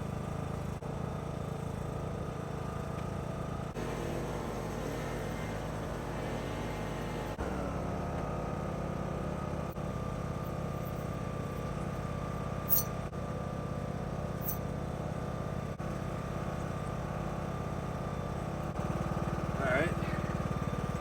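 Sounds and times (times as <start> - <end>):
lawnmower engine running: 0.0 - 21.0
metallic clinks: 12.6 - 13.0, 14.4 - 14.6.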